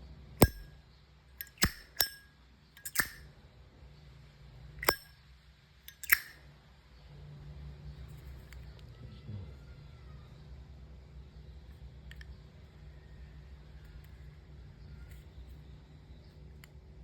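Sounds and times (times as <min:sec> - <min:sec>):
lighter lid metallic clinks: 0:00.4 - 0:00.7, 0:01.4 - 0:03.3, 0:04.8 - 0:05.1, 0:05.9 - 0:06.4.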